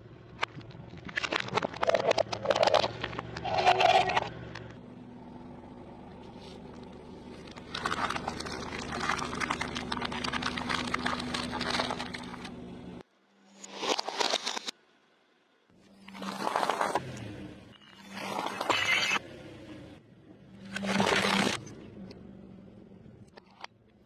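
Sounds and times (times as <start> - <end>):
crackly chewing and crunching: 6.6 - 12.6.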